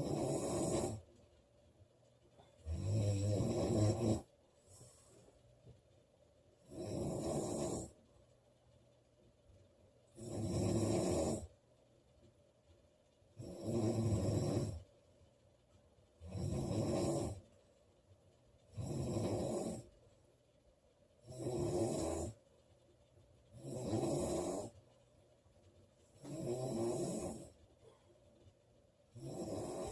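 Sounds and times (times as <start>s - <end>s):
woman snoring loudly: 0.0s - 1.0s, 2.7s - 4.3s, 6.7s - 7.9s, 10.2s - 11.5s, 13.4s - 14.8s, 16.2s - 17.4s, 18.8s - 19.9s, 21.2s - 22.4s, 23.6s - 24.7s, 26.2s - 27.5s, 29.2s - 29.9s.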